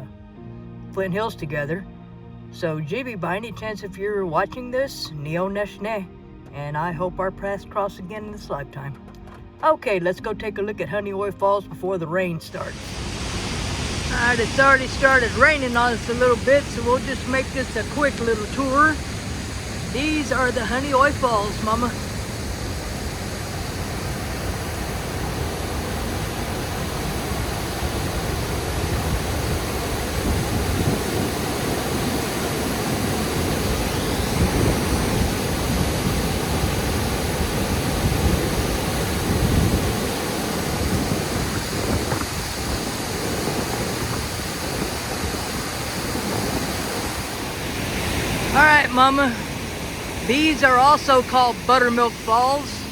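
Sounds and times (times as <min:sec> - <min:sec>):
waterfall rushing: 0:12.6 - 0:52.9.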